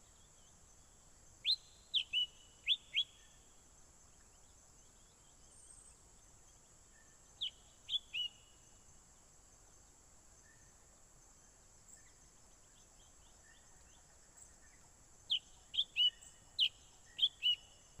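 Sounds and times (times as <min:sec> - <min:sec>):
faint high-pitched hum: 0:00.0 - 0:18.0
bird whistling calls: 0:01.4 - 0:03.3, 0:07.4 - 0:08.4, 0:15.3 - 0:17.7.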